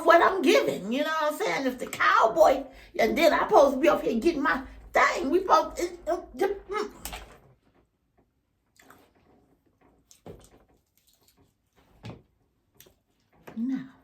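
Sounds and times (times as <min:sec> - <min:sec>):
person chewing crunchy food: 0:08.7 - 0:09.2, 0:10.0 - 0:11.8.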